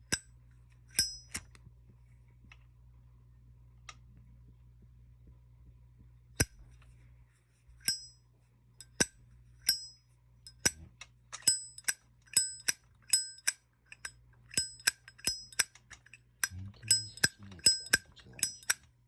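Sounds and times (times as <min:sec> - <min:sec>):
lighter lid snapping open and shut: 0:10.5 - 0:10.8, 0:11.4 - 0:16.2.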